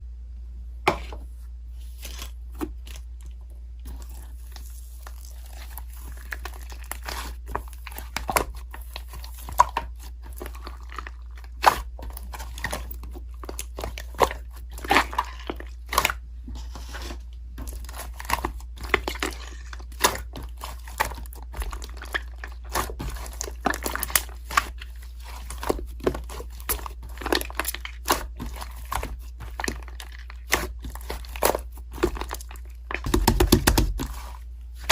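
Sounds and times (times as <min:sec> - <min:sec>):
steady low hum: 0:00.0 - 0:34.9
slime crackling and popping: 0:17.6 - 0:34.9.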